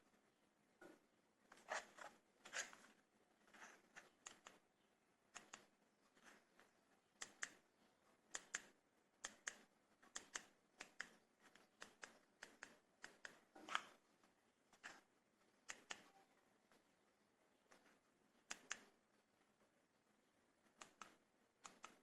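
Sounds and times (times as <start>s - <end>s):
faint sharp clicks: 20.7s - 22.0s.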